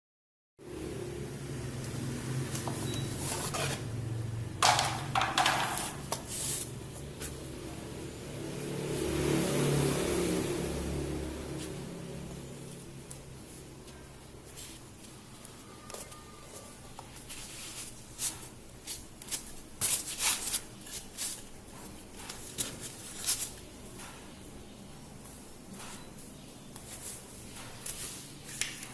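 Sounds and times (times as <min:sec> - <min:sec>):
rubbing and scraping: 0:03.2 - 0:04.0, 0:04.6 - 0:07.5
hands rustling and scraping objects: 0:04.6 - 0:07.8, 0:11.4 - 0:24.2.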